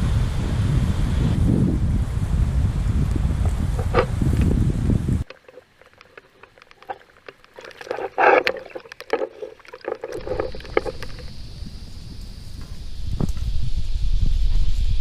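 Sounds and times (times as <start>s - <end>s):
wind on microphone: 0.0s - 15.0s
small knocks: 5.2s - 11.3s
paddle splashing in water: 5.2s - 11.4s
water drips: 5.2s - 11.4s.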